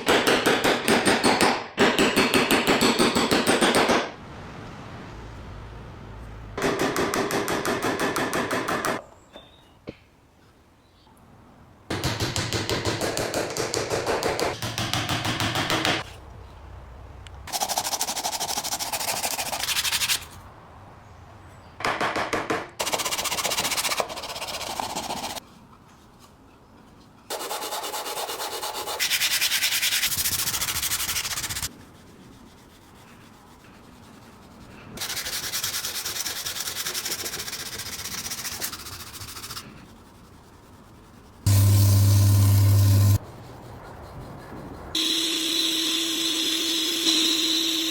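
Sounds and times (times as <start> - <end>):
abrasive sanding on metal: 27.3 - 47.9.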